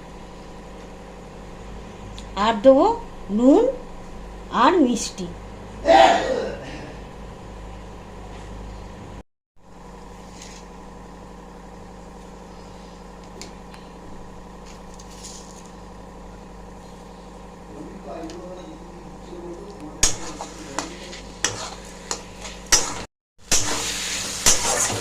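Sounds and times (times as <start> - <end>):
mechanical hum: 0.0 - 25.0.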